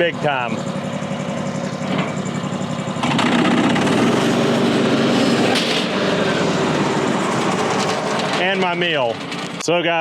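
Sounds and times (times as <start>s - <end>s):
small gasoline engine running: 0.0s - 10.0s.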